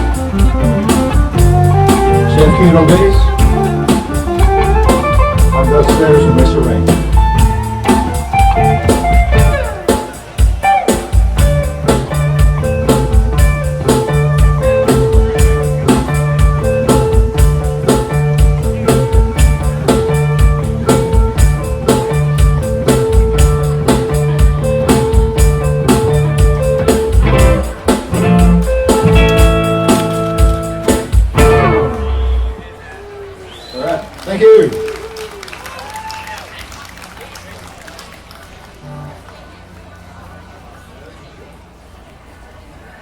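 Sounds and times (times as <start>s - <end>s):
electric guitar: 0.0s - 33.8s
blues-rock band playing: 0.0s - 36.1s.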